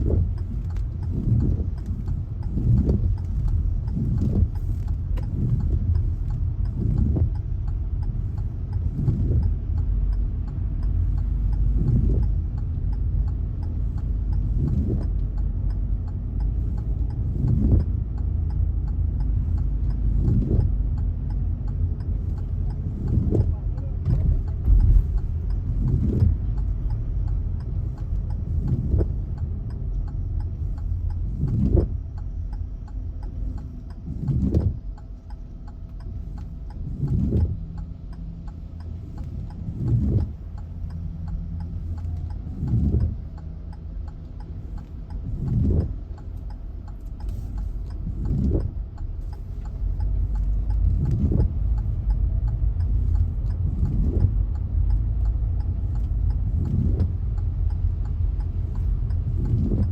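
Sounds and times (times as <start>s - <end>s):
car driving in heavy rain: 0.0s - 59.9s
windshield wipers sweeping: 0.0s - 59.9s.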